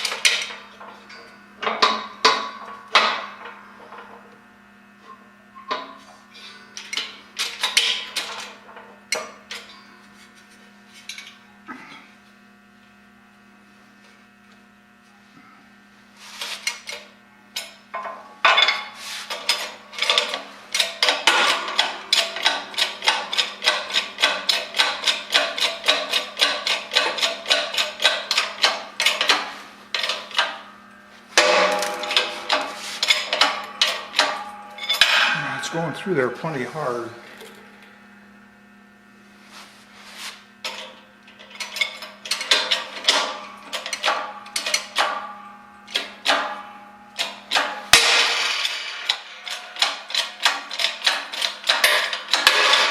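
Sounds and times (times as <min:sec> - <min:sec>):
machine hum: 0:16.6 - 0:52.9.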